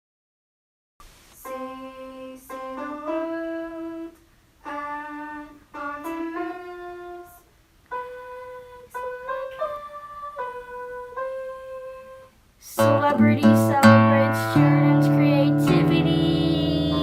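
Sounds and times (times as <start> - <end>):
instrumental intro music: 12.8 - 17.0.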